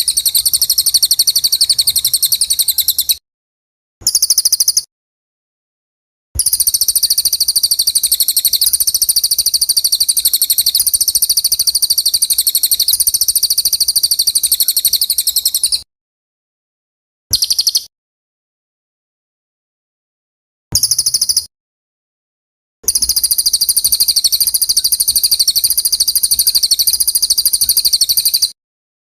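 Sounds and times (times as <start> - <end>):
songbird high-pitched trill: 0.0 - 3.2, 4.0 - 4.9, 6.4 - 15.9, 17.3 - 17.9, 20.8 - 21.5, 22.9 - 28.6.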